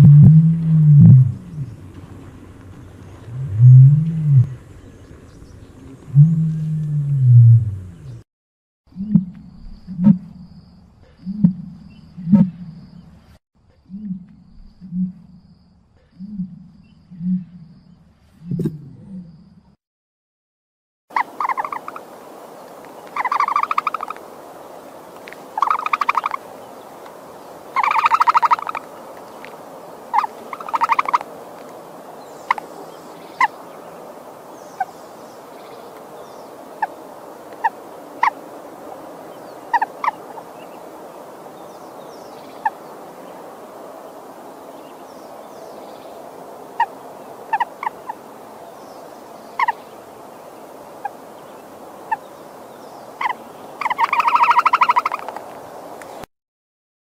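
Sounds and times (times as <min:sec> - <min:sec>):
rattling gobble-like bird calls: 0:21.2 - 0:22.0, 0:25.6 - 0:26.4, 0:27.8 - 0:28.8, 0:30.1 - 0:31.2, 0:53.2 - 0:55.4
steady background hiss: 0:21.2 - 0:56.3.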